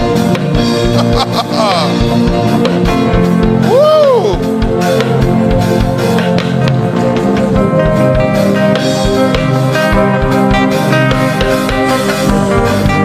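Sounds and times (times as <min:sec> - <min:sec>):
guitar music: 0:00.0 - 0:13.0
steady drum beat: 0:00.0 - 0:13.0.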